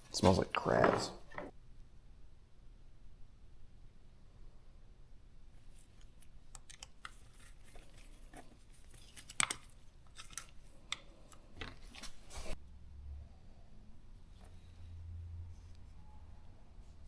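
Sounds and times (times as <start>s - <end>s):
small things being handled: 5.6s - 12.6s.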